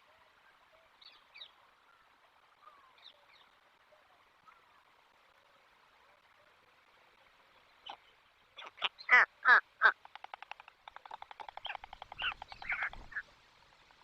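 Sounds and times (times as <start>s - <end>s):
stork bill clattering: 9.9s - 13.2s.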